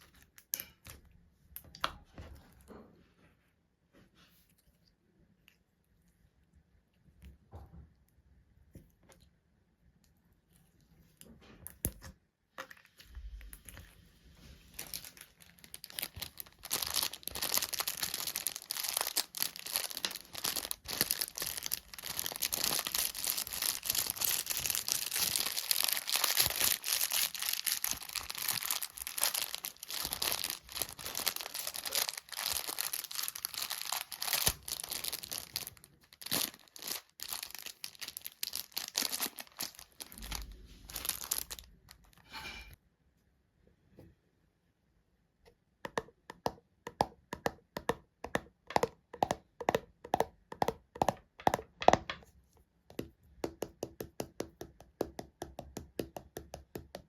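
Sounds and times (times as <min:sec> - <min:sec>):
material crackling and crunching: 0:13.2 - 0:42.8.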